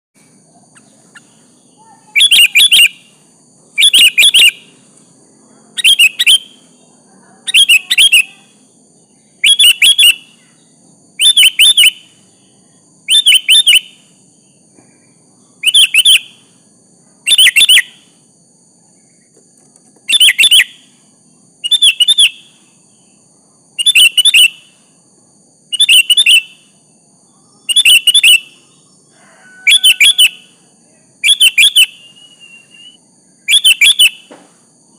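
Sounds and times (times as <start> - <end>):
bird chattering call: 0.7 - 3.2, 3.8 - 4.8, 5.8 - 6.8, 7.4 - 8.6, 9.4 - 12.3, 13.1 - 14.1, 15.6 - 16.5, 20.1 - 20.9, 21.6 - 22.6, 23.8 - 24.8, 25.7 - 26.7, 27.6 - 28.6, 29.5 - 30.6, 31.2 - 34.3.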